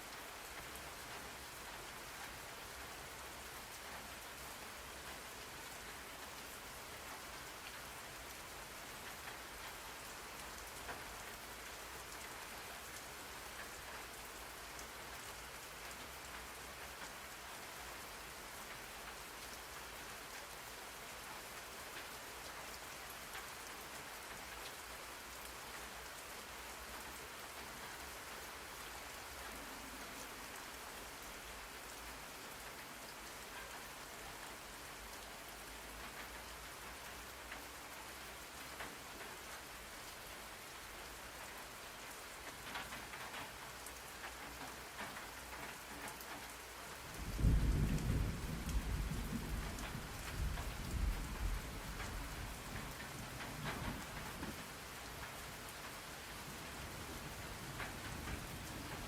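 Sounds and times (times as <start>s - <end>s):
steady rain: 0.0s - 59.0s
rain drop ticks: 7.1s - 59.0s
thunder rumble: 47.2s - 52.8s.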